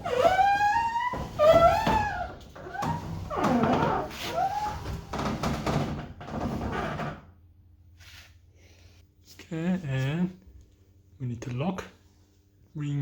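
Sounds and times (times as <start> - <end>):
garage door squealing: 0.0 - 7.2.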